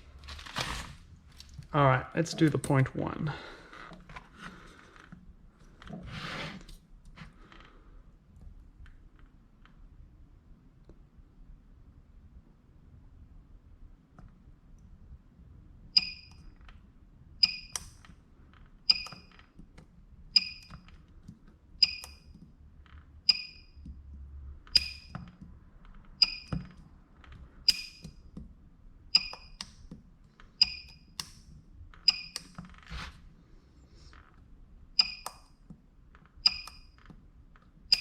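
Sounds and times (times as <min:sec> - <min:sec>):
spot welder snap and ping: 0:27.7 - 0:28.1.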